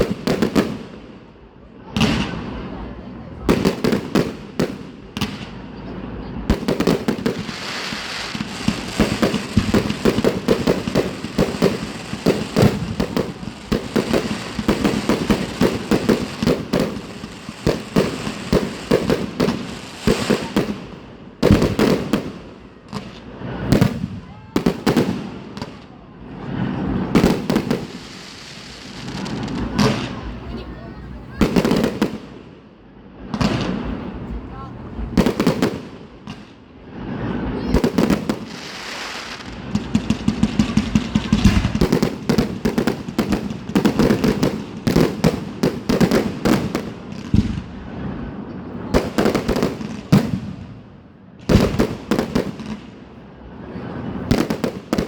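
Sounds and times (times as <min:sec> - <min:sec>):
fireworks bangs and crackling: 0:00.0 - 0:55.0.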